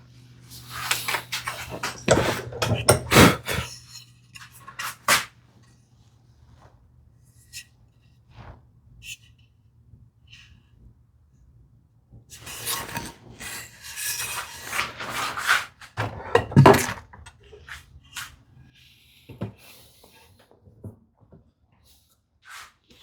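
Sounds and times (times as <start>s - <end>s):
hand tool scraping wood: 0.6s - 3.8s, 4.4s - 5.3s, 12.4s - 16.9s.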